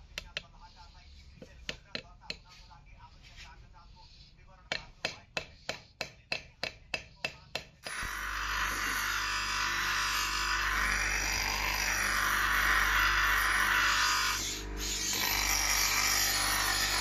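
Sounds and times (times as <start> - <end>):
hammer striking metal: 4.7 - 7.9
power grinder running: 7.9 - 17.0.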